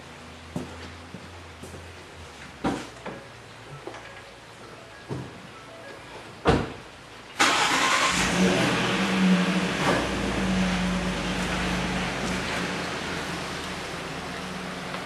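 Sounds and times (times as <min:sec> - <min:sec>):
engine starting and idling: 0:07.4 - 0:12.8.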